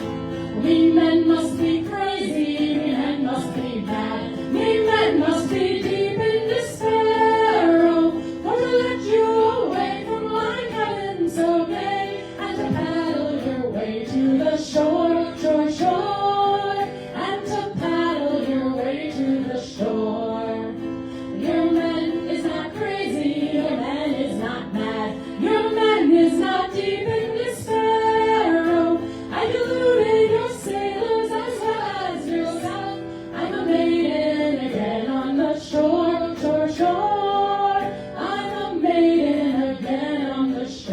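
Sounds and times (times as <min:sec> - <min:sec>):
women singing in harmony: 0:00.0 - 0:40.9.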